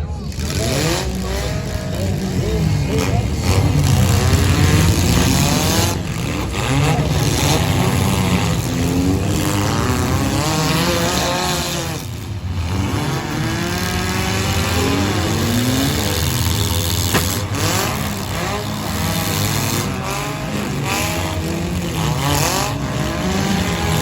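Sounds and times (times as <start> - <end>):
car engines revving: 0.0 - 24.0.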